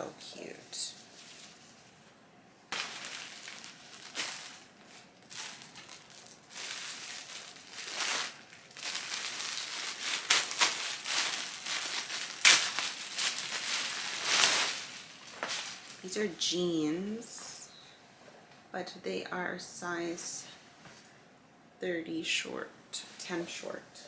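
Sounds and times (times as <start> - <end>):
sharp crackle: 2.7 - 16.1
plastic packaging crinkling: 2.7 - 16.2.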